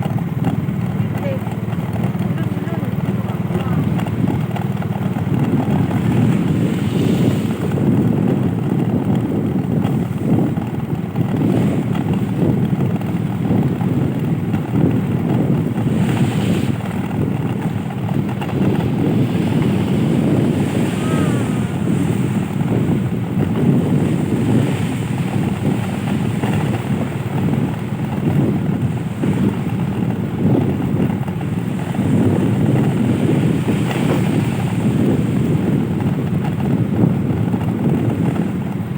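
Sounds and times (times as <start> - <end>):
loud low rumble: 17.4 - 24.5.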